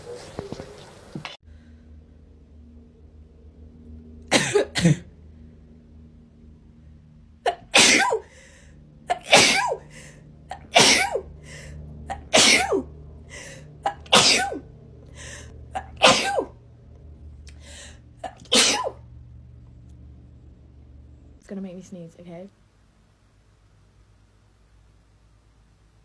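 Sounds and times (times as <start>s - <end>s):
person sneezing: 7.5s - 8.3s, 9.1s - 9.8s, 10.5s - 11.2s, 12.1s - 12.8s, 13.9s - 14.6s, 18.2s - 19.0s.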